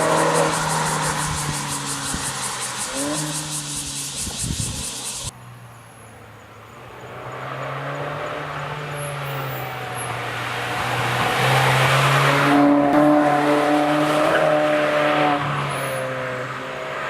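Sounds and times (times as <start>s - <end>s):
car engine revving: 0.0s - 5.3s.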